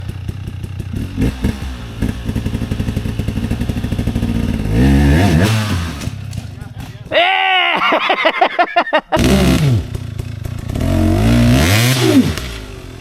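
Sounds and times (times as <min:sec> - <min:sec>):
engine knocks: 0:00.0 - 0:07.2
dirt bike engine revving: 0:00.0 - 0:13.0.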